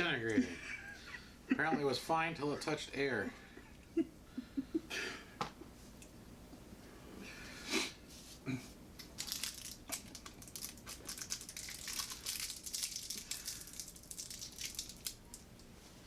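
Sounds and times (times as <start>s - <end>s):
plastic packaging crinkling: 9.0s - 15.6s.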